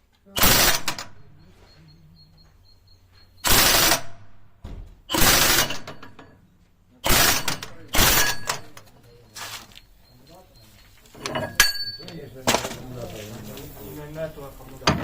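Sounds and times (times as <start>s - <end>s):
impact wrench hammering: 0.4s - 1.1s, 3.4s - 6.3s, 7.0s - 8.9s.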